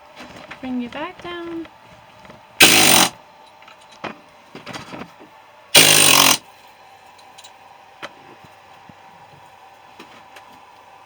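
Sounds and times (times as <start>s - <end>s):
pneumatic tool burst: 2.6s - 3.1s, 5.8s - 6.4s.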